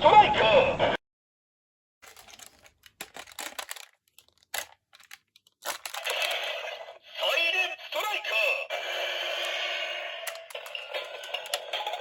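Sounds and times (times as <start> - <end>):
plastic toy clicks and taps: 10.3 - 12.0.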